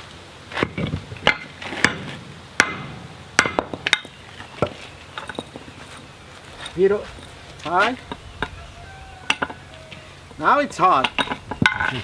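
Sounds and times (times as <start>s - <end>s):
hammer striking steel on anvil: 1.3s - 4.1s.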